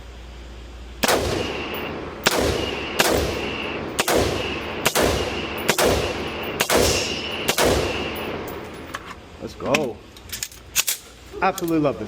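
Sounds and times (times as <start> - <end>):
rifle shots with echo: 1.0 - 8.9.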